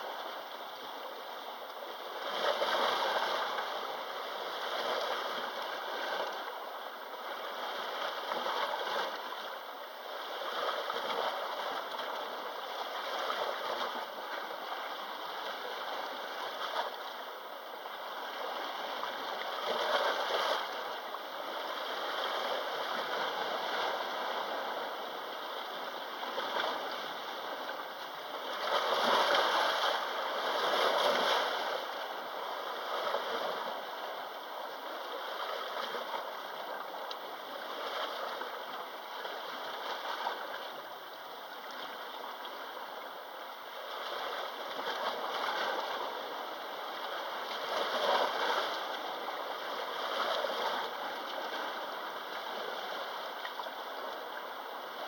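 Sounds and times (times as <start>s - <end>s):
sea waves washing against shore: 18.1s - 40.6s.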